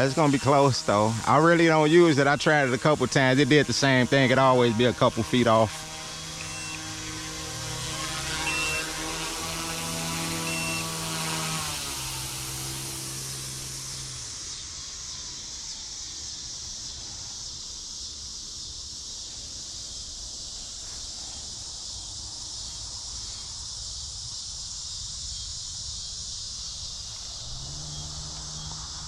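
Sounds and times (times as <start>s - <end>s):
high-pitched hiss: 0.0s - 29.0s
rc helicopter rotor whine: 0.0s - 29.0s
wind rumble: 25.6s - 29.0s.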